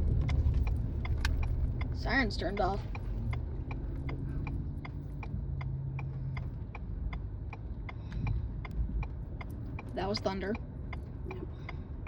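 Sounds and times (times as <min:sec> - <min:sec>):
car rumble: 0:00.0 - 0:12.0
turn signal ticking: 0:00.0 - 0:12.0.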